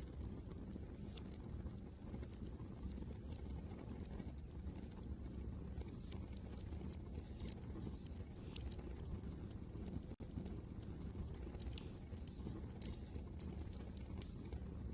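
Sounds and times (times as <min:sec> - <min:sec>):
wood fire crackling: 0:00.0 - 0:14.9.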